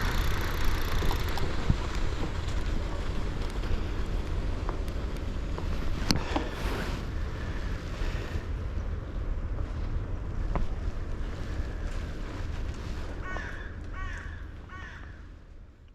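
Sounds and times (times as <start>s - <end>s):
wind rumble on microphone: 0.0s - 15.9s
crow cawing: 13.2s - 15.2s.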